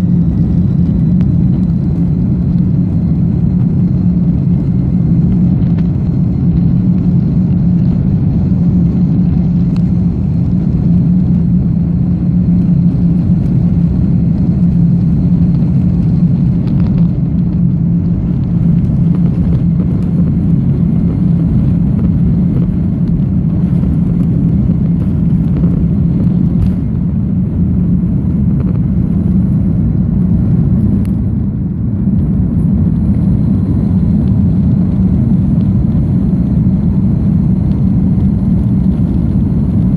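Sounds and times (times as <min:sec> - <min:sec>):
jet engine cabin rumble: 0:00.0 - 0:39.9.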